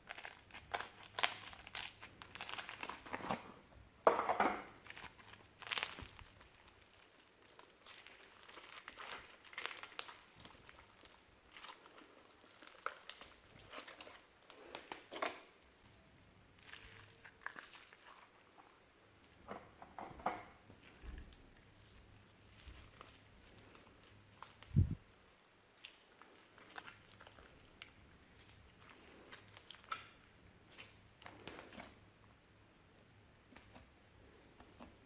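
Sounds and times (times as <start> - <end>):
hands squishing slime: 0.0 - 3.4, 4.7 - 15.6, 16.5 - 18.8, 20.8 - 25.0, 25.6 - 32.0, 33.4 - 35.0.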